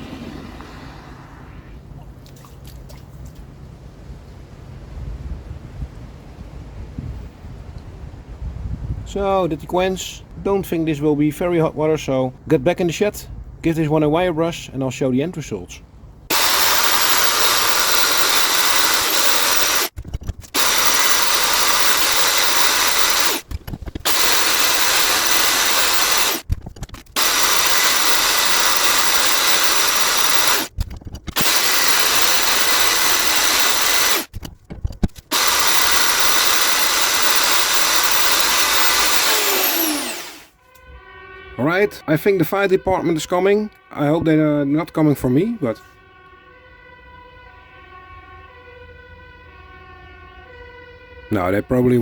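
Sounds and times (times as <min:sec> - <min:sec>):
power tool falling whine: 0:16.3 - 0:26.4, 0:27.2 - 0:34.4, 0:35.0 - 0:40.5
rotary wire brush scouring metal: 0:16.3 - 0:40.5.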